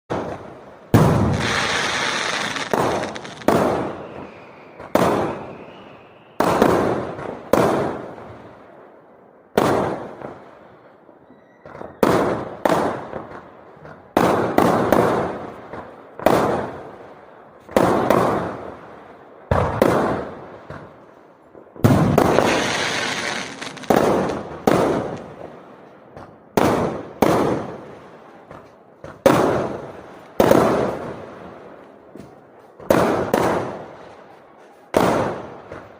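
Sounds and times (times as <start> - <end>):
fireworks banging: 0.1 - 5.5, 21.8 - 33.9, 34.9 - 35.9
firework crackling: 1.0 - 5.5, 21.8 - 25.5.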